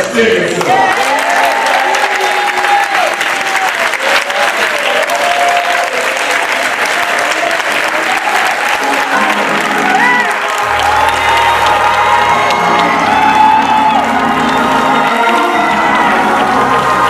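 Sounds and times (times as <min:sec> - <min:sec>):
audience applauding: 0:00.0 - 0:17.0
music playing: 0:07.5 - 0:17.0
bass line: 0:10.6 - 0:17.0.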